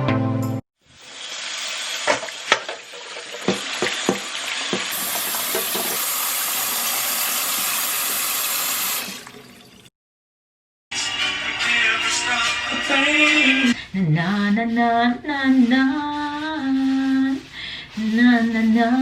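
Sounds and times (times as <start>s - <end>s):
food sizzling in a frying pan: 0.9s - 8.6s.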